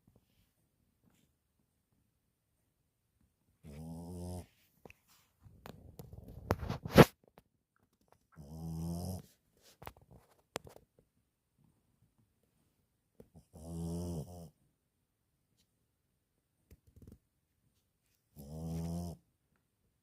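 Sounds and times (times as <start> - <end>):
dog snoring: 3.6 - 4.6, 8.4 - 9.4, 13.3 - 14.6, 18.4 - 19.2.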